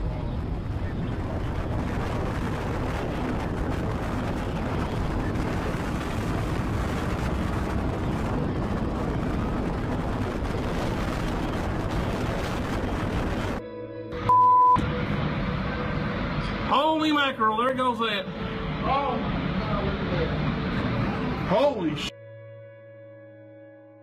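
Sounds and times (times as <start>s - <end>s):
wind buffeting microphone: 0.0s - 13.6s.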